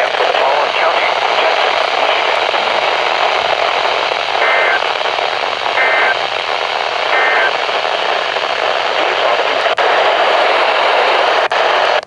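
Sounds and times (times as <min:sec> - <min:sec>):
radio static hiss: 0:00.0 - 0:12.0.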